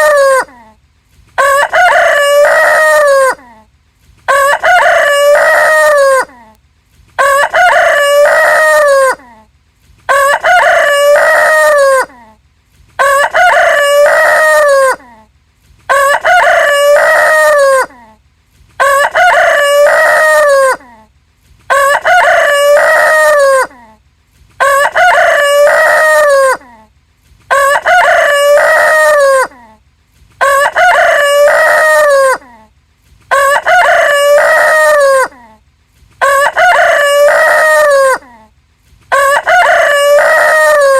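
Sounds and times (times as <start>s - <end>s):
rooster crowing: 1.4s - 3.4s, 4.3s - 6.3s, 7.2s - 9.3s, 10.1s - 12.2s, 13.0s - 15.0s, 15.9s - 18.0s, 18.8s - 20.9s, 21.7s - 23.9s, 24.6s - 26.8s, 27.5s - 29.6s, 30.4s - 32.6s, 33.3s - 35.5s, 36.2s - 38.4s, 39.1s - 40.9s.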